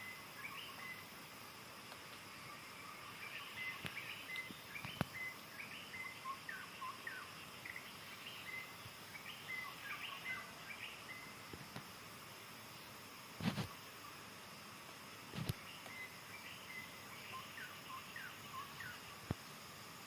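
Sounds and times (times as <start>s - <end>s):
bird singing whistled notes: 0.0s - 1.1s, 2.8s - 11.4s, 15.6s - 19.1s
insects humming: 0.0s - 20.0s.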